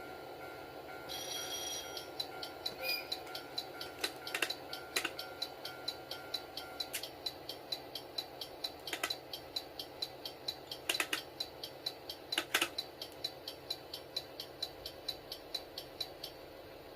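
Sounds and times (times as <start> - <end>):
level-crossing warning bell: 0.0 - 8.3
model train hum: 0.0 - 16.9
clicks and clatters: 10.9 - 11.2.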